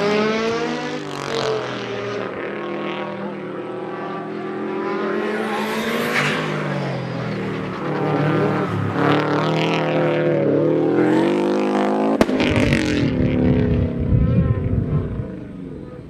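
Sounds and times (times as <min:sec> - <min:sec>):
car engine revving: 0:00.0 - 0:16.0
sharp crack: 0:12.2 - 0:14.0.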